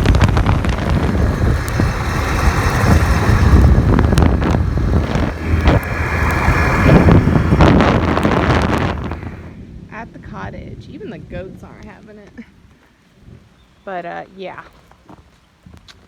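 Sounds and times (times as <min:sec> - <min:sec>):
quad bike engine rumbling: 0:00.0 - 0:09.5.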